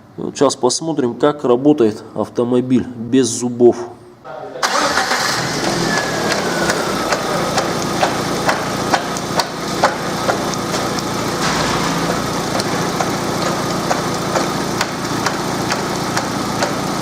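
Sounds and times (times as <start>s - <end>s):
car engine idling: 4.6s - 17.0s
whine falling in pitch: 5.5s - 9.8s
timing belt knocking: 6.7s - 17.0s.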